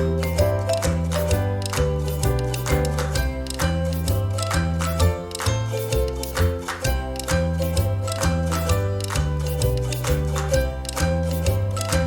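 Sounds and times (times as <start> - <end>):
upbeat children's music: 0.0 - 12.0.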